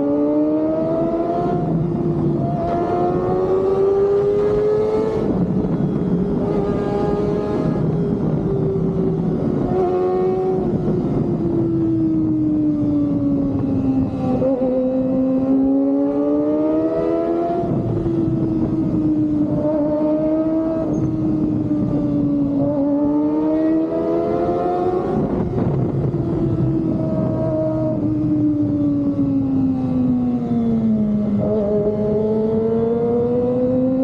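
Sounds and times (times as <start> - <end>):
motorcycle engine revving high: 0.0 - 34.0.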